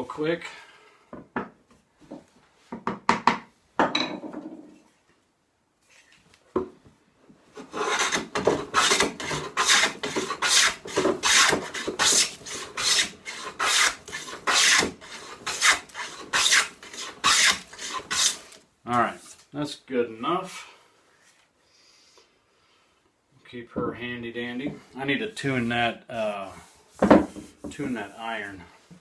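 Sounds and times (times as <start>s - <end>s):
hand plane rasping on wood: 7.6s - 18.4s.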